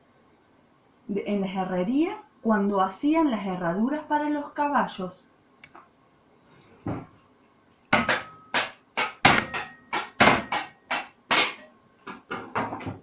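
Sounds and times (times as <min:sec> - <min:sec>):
hammer striking metal on anvil: 0:08.0 - 0:11.6.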